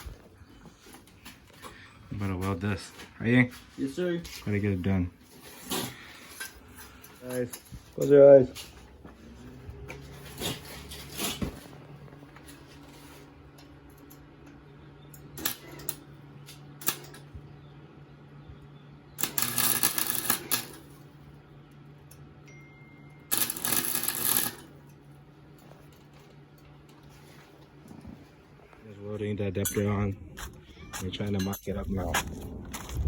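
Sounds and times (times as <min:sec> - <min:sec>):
steady low hum: 0:00.0 - 0:33.0
arc welding crackling: 0:15.2 - 0:17.3, 0:19.2 - 0:22.1, 0:23.3 - 0:25.1.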